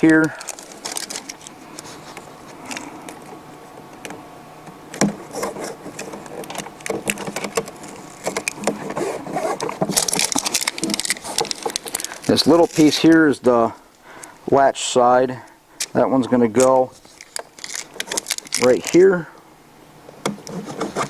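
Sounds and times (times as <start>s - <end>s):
hands rustling velcro strips: 0.0s - 3.3s, 5.2s - 14.4s, 16.6s - 19.2s.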